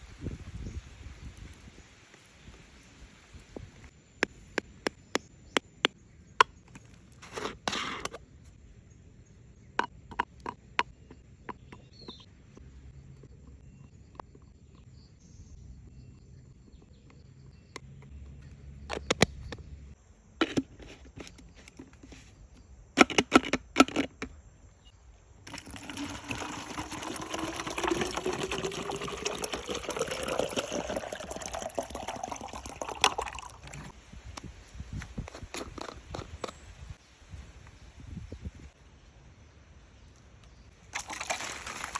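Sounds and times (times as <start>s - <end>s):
water pouring into a container: 25.5s - 33.9s, 40.9s - 41.9s.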